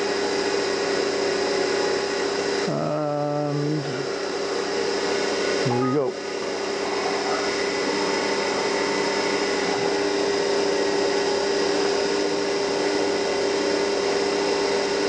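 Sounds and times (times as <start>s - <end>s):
mini mill motor whine: 6.0s - 15.0s.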